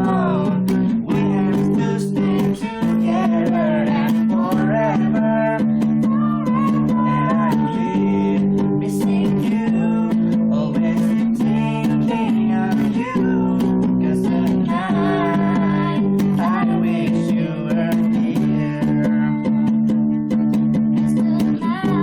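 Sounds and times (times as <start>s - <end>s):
song played on guitar: 0.0s - 22.0s.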